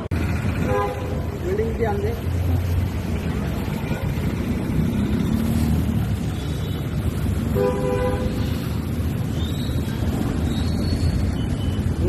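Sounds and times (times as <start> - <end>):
vehicle horn: 0.6 - 1.2, 7.5 - 8.4.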